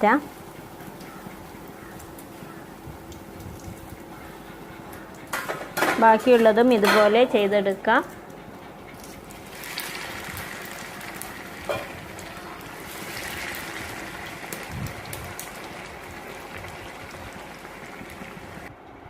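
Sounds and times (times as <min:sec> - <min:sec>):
hot oil sizzling and crackling: 0:00.0 - 0:07.4, 0:08.9 - 0:18.7.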